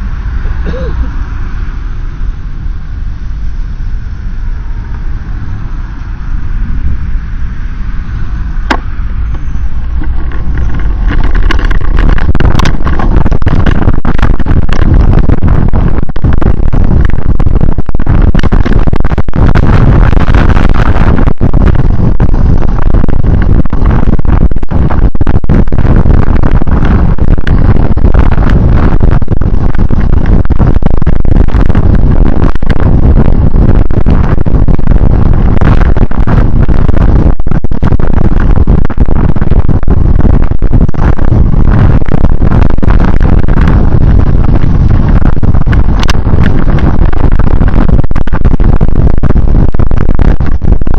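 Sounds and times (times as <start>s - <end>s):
vehicle moving through rain: 0.0s - 40.3s
sharp crackles: 0.0s - 50.9s.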